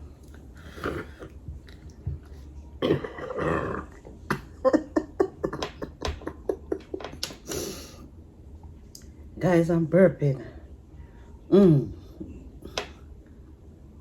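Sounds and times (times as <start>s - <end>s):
woman burping: 2.8s - 6.1s, 11.5s - 12.0s.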